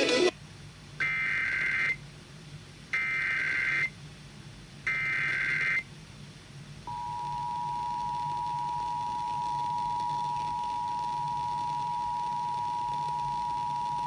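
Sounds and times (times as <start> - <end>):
two-tone attention signal: 6.9 - 14.0.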